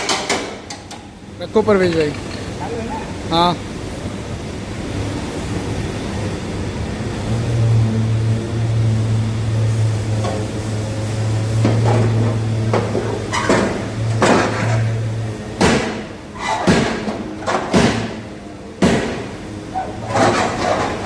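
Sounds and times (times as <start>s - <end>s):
low machine hum: 0.0s - 21.0s
loud sharp knocks: 11.6s - 14.9s, 15.6s - 19.4s.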